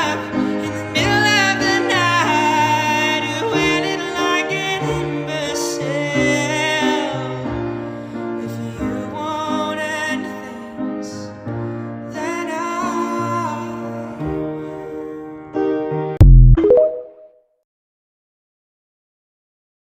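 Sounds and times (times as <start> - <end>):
man singing a ballad: 0.0 - 11.4, 12.1 - 14.4
piano accompaniment: 0.0 - 17.3.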